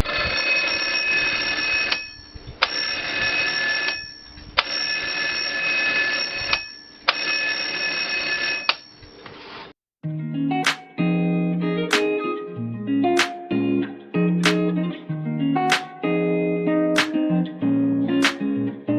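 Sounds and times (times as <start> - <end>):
alarm clock ringing: 0.1 - 8.9
sharp clicks: 13.2 - 13.4, 14.4 - 14.6, 15.7 - 16.0, 17.0 - 17.2, 18.2 - 18.4.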